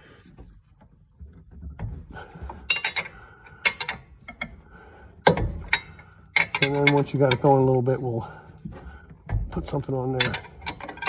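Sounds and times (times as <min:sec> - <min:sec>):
wrench clinking on metal bolt: 0:02.7 - 0:04.5, 0:05.3 - 0:07.6, 0:10.1 - 0:11.0.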